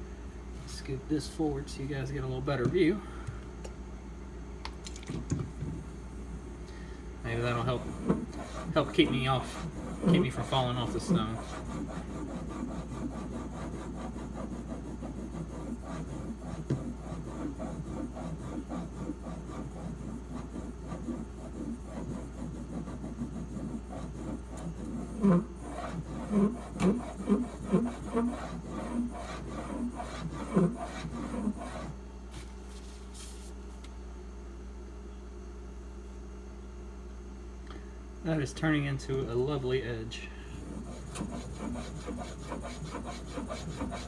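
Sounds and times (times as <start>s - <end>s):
knife scraping on whetstone: 7.6s - 31.9s, 40.6s - 44.0s.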